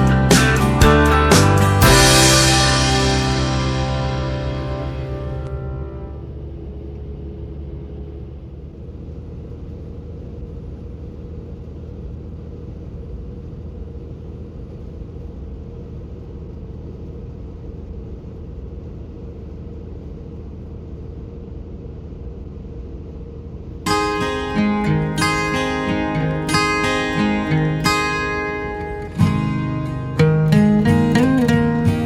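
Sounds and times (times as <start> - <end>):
truck engine and road rumble: 0.0 - 32.0.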